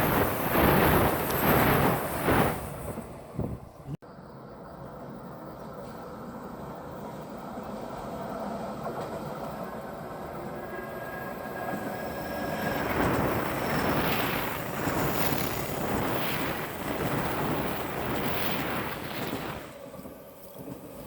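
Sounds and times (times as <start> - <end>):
wind on microphone: 0.0 - 3.9, 11.1 - 21.0
train passing close by: 0.0 - 21.0.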